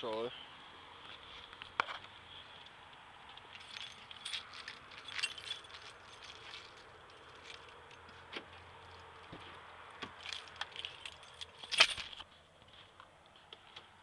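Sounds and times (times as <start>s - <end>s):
keys jingling: 3.4s - 8.1s, 10.2s - 12.2s.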